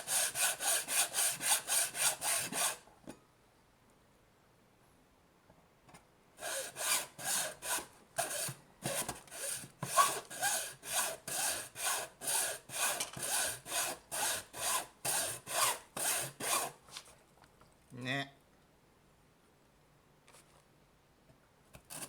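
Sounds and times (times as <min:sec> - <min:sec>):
hand saw cutting plastic: 0:00.0 - 0:02.8, 0:06.4 - 0:16.8, 0:21.8 - 0:22.0.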